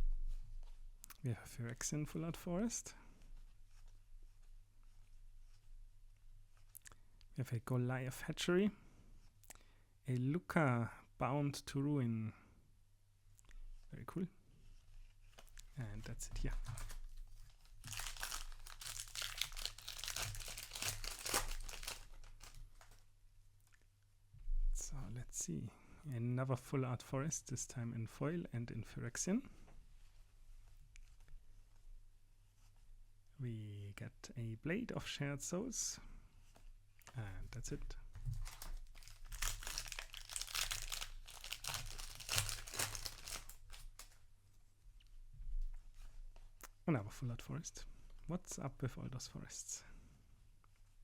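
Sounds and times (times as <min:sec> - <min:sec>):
foil wrapper crinkling: 0:17.5 - 0:23.0, 0:38.3 - 0:44.2.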